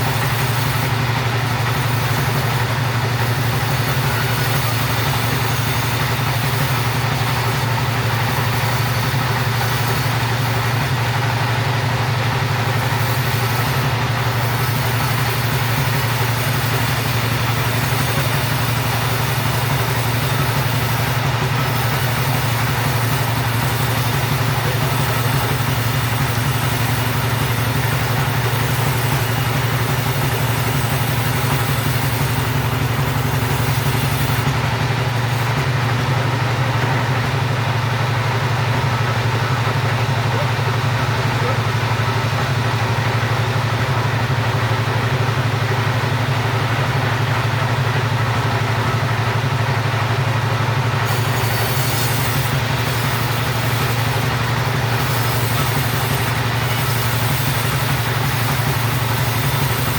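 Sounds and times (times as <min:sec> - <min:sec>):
chainsaw sawing through timber: 0:00.0 - 0:37.9, 0:50.7 - 0:59.9.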